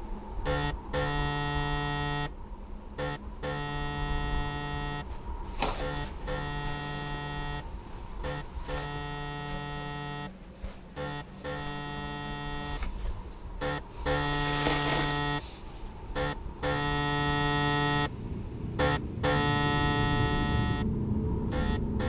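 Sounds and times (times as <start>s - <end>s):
buzzy electronic tone: 0.4s - 2.3s, 3.0s - 5.1s, 5.8s - 10.3s, 11.0s - 12.8s, 13.6s - 15.4s, 16.2s - 18.1s, 18.8s - 20.9s, 21.5s - 22.0s.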